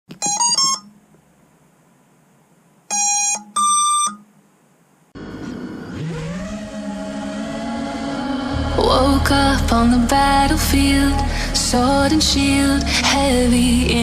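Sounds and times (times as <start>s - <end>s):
music: 7.0s - 14.0s.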